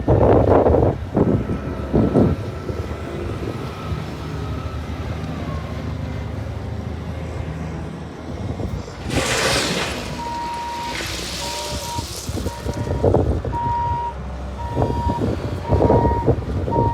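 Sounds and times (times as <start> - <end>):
vehicle engine humming: 1.3 - 16.7
loud rush of noise: 9.0 - 13.1.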